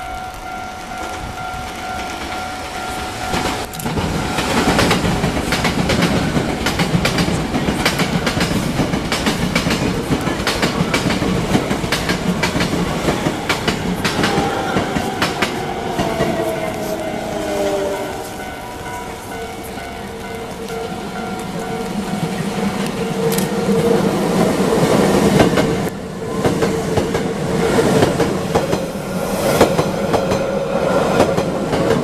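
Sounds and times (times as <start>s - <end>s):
train wheels clattering over rail joints: 3.3s - 16.6s
train whine falling in pitch: 11.6s - 26.5s.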